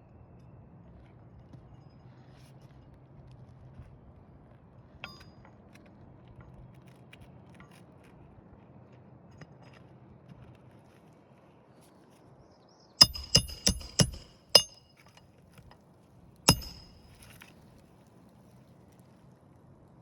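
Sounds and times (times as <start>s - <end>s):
hammer striking metal: 13.0s - 14.9s, 16.5s - 17.3s.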